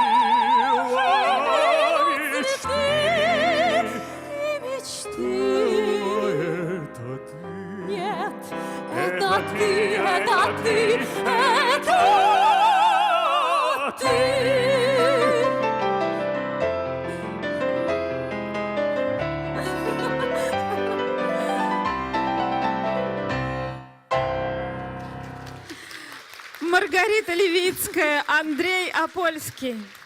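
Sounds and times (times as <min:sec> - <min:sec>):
operatic duet singing: 0:00.0 - 0:16.3.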